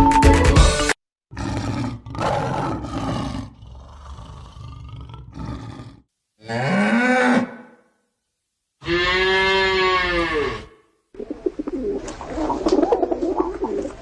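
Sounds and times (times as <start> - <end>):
big cat roaring: 1.3 - 7.6.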